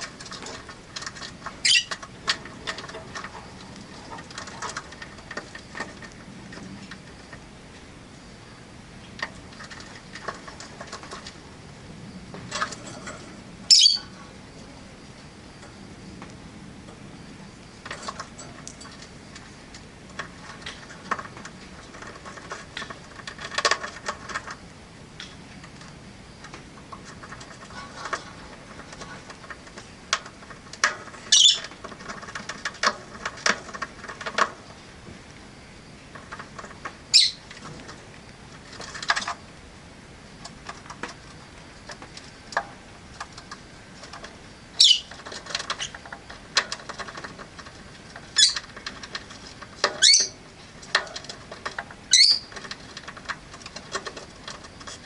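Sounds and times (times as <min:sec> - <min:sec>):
shrill bird calls: 0:01.6 - 0:01.9, 0:13.7 - 0:14.1, 0:31.3 - 0:31.6, 0:37.1 - 0:37.4, 0:44.8 - 0:45.1, 0:50.0 - 0:50.4, 0:52.1 - 0:52.5
birds chirping: 0:01.6 - 0:02.0, 0:12.9 - 0:15.8, 0:31.2 - 0:32.3, 0:37.1 - 0:37.5, 0:44.8 - 0:46.1, 0:48.3 - 0:49.2, 0:49.8 - 0:50.4, 0:51.6 - 0:52.7.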